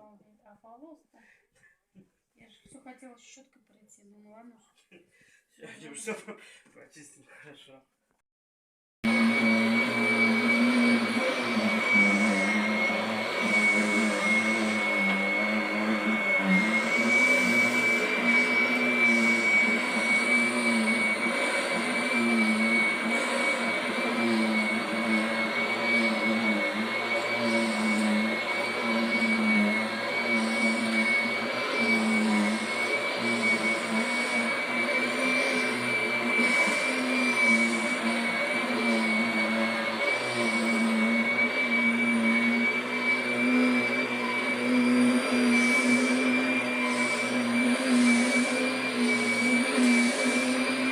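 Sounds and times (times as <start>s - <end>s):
vacuum cleaner running: 9.0s - 50.9s.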